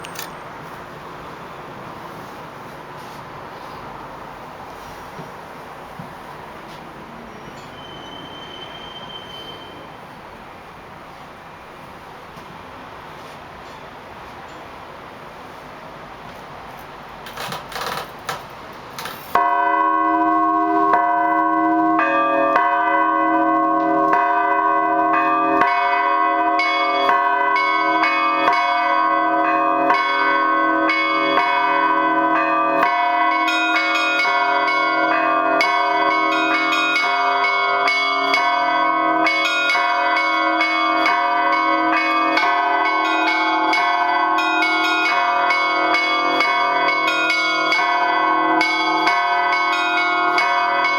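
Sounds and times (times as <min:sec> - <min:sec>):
church bells pealing: 0:19.3 - 0:50.9.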